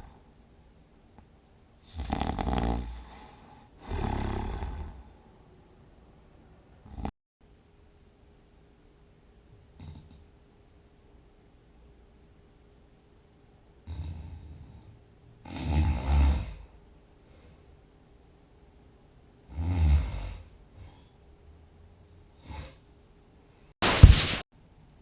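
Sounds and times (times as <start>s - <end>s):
person snoring loudly: 1.9s - 5.1s, 15.4s - 16.6s, 19.5s - 20.5s
faint breaths: 2.8s - 5.4s, 16.6s - 17.9s.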